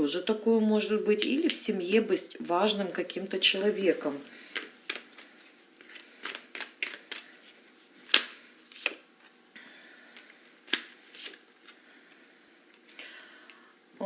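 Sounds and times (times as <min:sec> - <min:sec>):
cards clicking and slapping: 0:04.5 - 0:09.3, 0:10.2 - 0:11.4.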